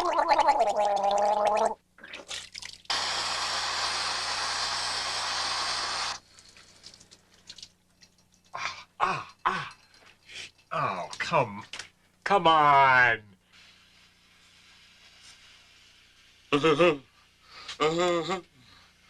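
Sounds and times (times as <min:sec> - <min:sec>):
man gargling: 0:00.0 - 0:01.8, 0:08.6 - 0:09.8, 0:17.8 - 0:18.6.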